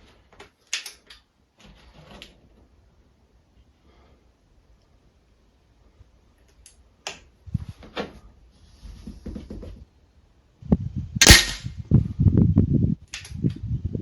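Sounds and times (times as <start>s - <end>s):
air rifle shot crack: 11.2s - 11.7s.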